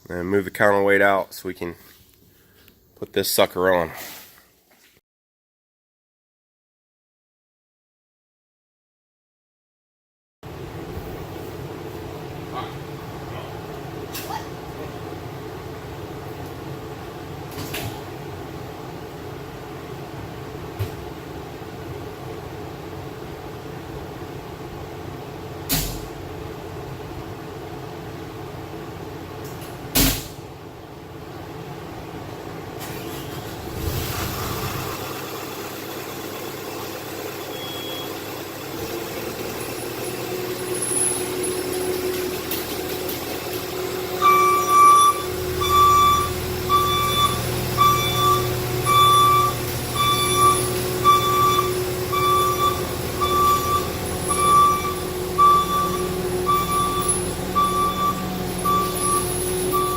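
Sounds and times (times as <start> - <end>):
skid steer engine running: 32.3 - 59.9
reversing alarm beeping: 37.4 - 38.2, 43.9 - 59.9.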